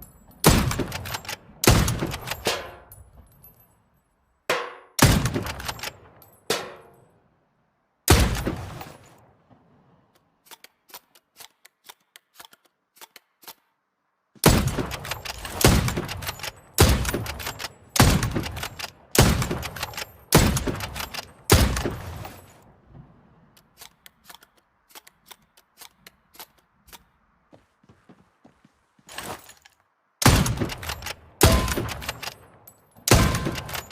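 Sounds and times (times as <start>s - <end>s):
rifle shots with echo: 0.4s - 2.9s, 5.0s - 6.8s, 8.1s - 9.6s, 14.4s - 22.4s, 30.2s - 33.9s.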